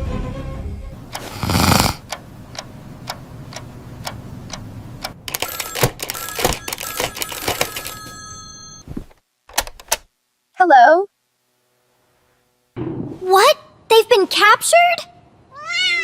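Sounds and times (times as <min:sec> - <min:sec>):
telephone ringing: 0:05.3 - 0:08.9.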